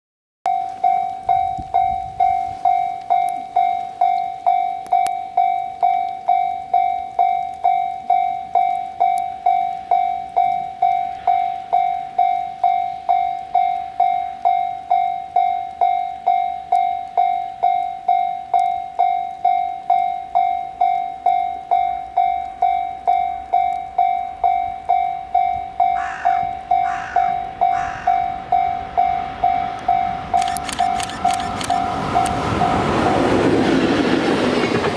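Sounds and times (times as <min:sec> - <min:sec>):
level crossing alarm ringing: 0:00.5 - 0:33.3
approaching train: 0:09.4 - 0:16.4, 0:21.7 - 0:34.9.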